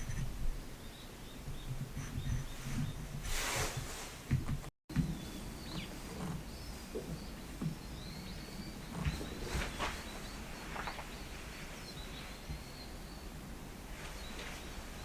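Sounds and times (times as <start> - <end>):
short rustle: 2.0 - 4.7, 8.9 - 12.7, 13.9 - 15.0.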